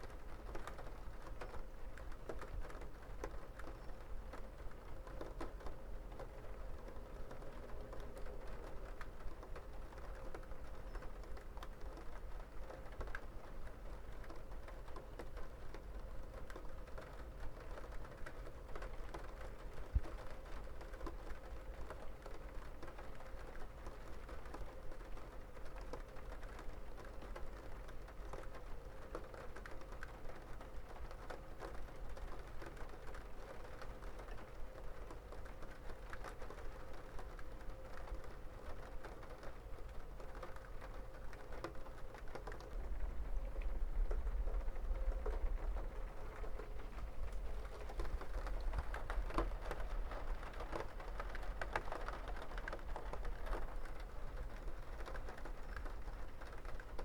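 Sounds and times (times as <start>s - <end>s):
rain pattering: 0.0s - 57.0s
faint steady hum: 31.6s - 57.0s.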